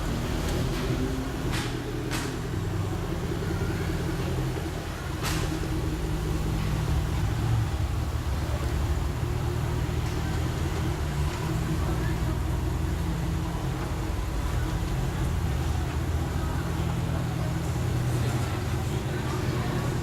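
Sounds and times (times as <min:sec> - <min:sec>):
car engine running: 0:00.0 - 0:20.0
road noise: 0:00.0 - 0:20.0.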